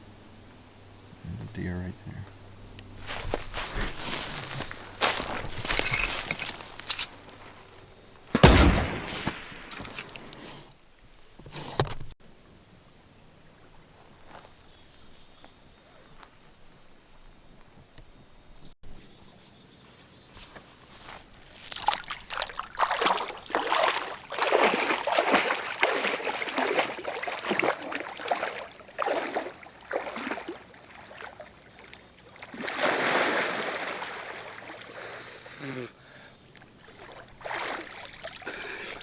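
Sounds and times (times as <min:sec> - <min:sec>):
paddle splashing in water: 0:21.4 - 0:35.2, 0:36.8 - 0:39.0
water surging: 0:21.6 - 0:35.5, 0:36.8 - 0:39.0.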